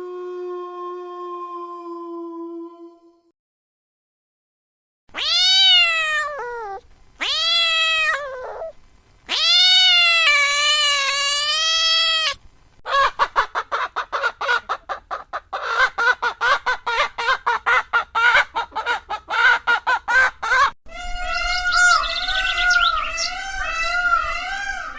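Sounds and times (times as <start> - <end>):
cat meowing: 5.2 - 12.4, 21.0 - 24.9.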